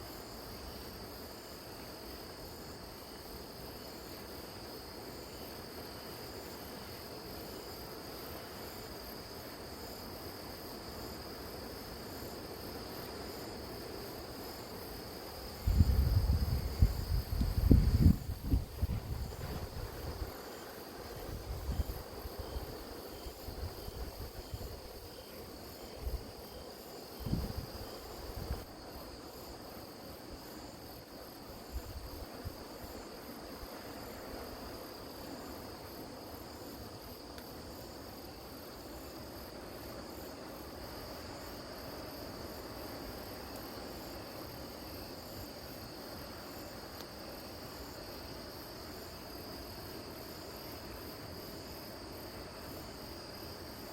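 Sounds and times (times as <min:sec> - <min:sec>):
crickets chirping: 0:00.0 - 0:53.9
wind buffeting microphone: 0:15.6 - 0:20.3, 0:27.2 - 0:28.6.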